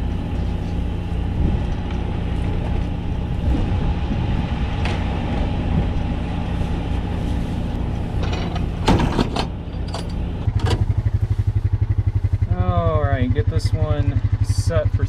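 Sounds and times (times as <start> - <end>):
engine running steadily: 0.0 - 15.0
clattering knocks: 8.2 - 10.9.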